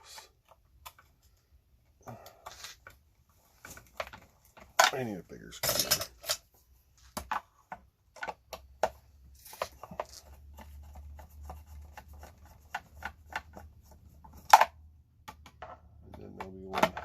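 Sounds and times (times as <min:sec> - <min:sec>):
tools and plastic parts clicking: 0:03.6 - 0:06.5, 0:07.2 - 0:10.7, 0:14.3 - 0:17.0.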